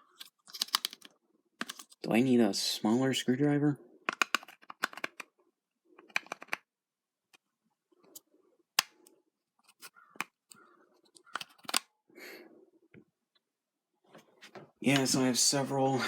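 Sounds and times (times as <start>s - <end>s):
screwdrivers and plastic clicking: 0.0s - 2.0s, 4.0s - 5.4s, 6.0s - 6.7s, 7.3s - 11.9s.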